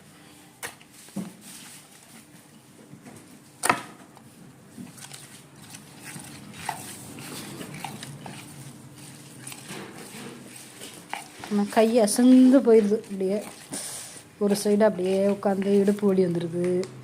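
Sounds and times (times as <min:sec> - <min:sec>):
wet swishing and scraping on plate: 0:05.6 - 0:16.1.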